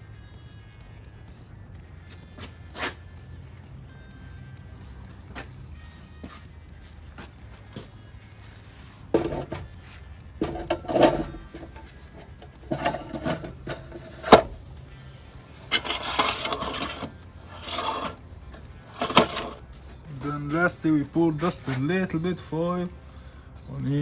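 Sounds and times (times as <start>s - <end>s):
scraping and knocking of parts: 7.2s - 14.7s, 15.6s - 20.7s.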